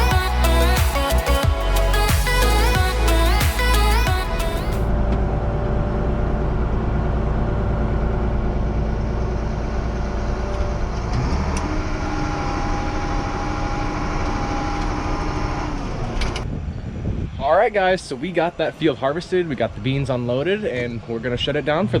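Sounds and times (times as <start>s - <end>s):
steady whine: 0.0s - 11.1s
diesel engine droning: 0.0s - 16.4s.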